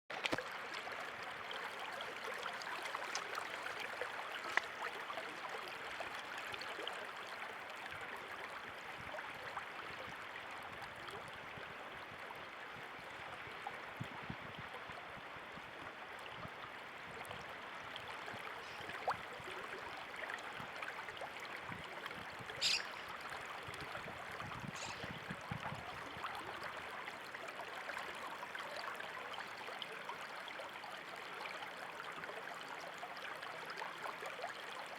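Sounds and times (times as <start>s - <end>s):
stream water rushing: 19.4s - 33.2s.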